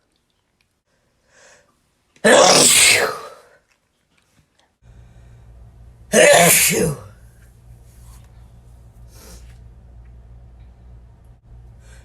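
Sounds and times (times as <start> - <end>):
person sneezing: 2.2 - 3.5, 6.1 - 7.1
low steady hum: 4.6 - 12.0.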